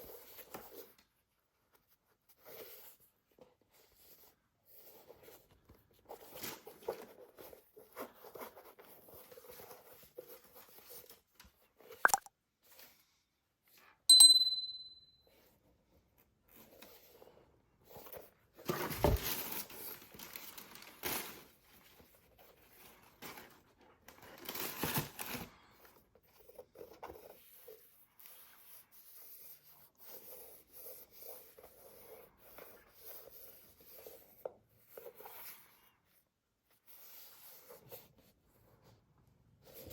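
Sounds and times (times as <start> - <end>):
high ringing ping: 14.1 - 15.2
paper rustling and crinkling: 17.9 - 27.8.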